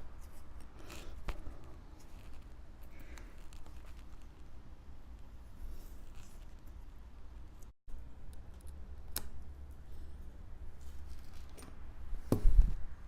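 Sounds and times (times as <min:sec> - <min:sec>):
quiet scraping and handling: 0:00.1 - 0:07.7.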